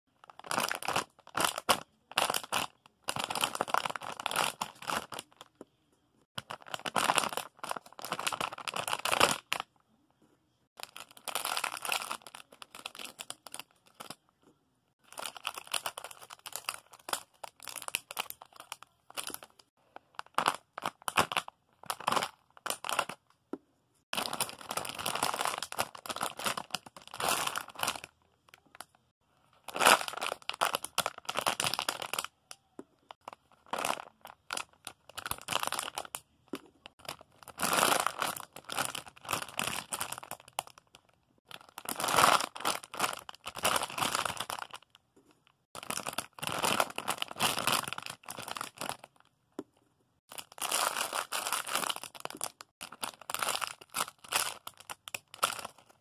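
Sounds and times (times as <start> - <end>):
wrappings crinkling and rustling: 36.8 - 44.9, 45.7 - 49.3, 50.3 - 56.0.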